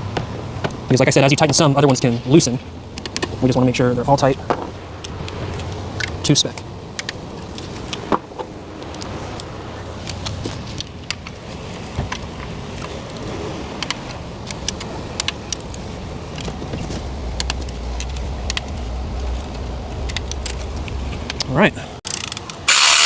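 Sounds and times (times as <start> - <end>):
low rumble: 16.1 - 21.5
torque wrench ratchet clicks: 22.1 - 23.0.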